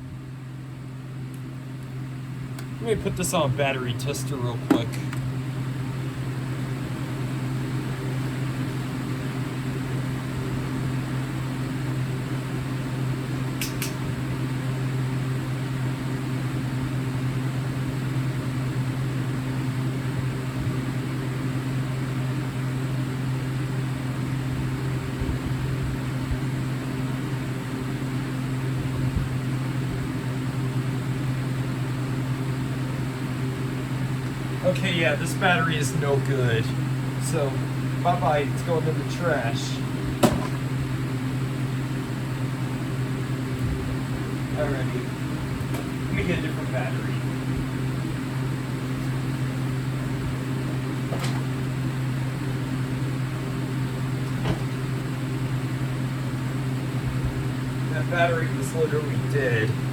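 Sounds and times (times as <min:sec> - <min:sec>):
fan motor humming: 0:00.0 - 0:59.9
short click: 0:13.6 - 0:14.0.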